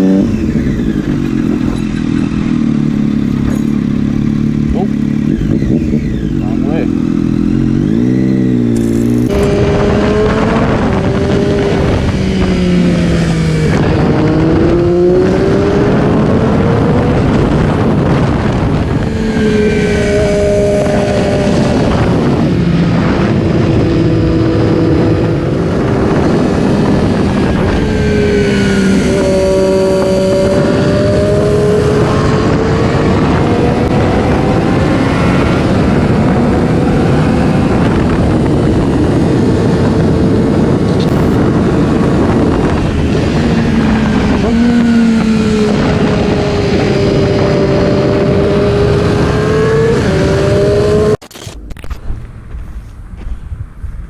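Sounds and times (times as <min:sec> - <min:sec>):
motorcycle engine revving: 0:00.0 - 0:53.2.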